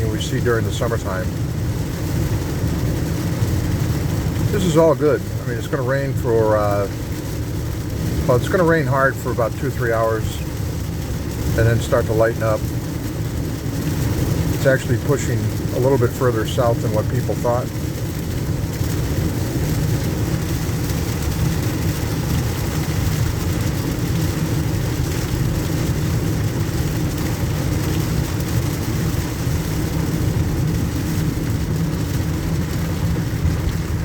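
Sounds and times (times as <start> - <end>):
engine and road drone: 0.0 - 34.0
heavy rain on car: 0.0 - 34.0
tyres hissing on water: 4.5 - 6.9.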